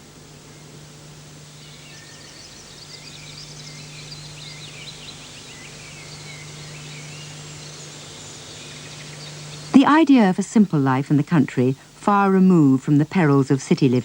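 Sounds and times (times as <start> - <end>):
steady low hum: 0.0 - 14.0
songbirds chirping and singing: 1.4 - 10.8.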